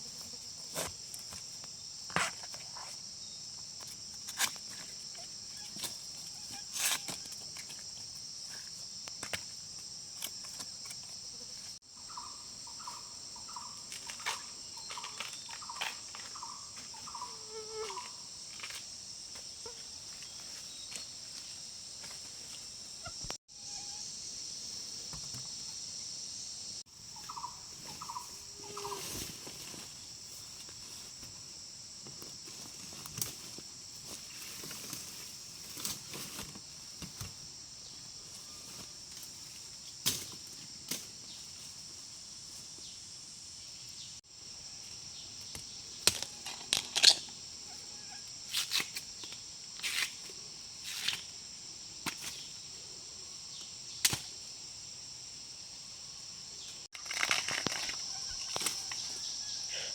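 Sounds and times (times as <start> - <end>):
insects chorus: 0.0 - 59.9
repeated animal calls: 27.2 - 29.2
sharp knocks and cracks: 54.0 - 54.3.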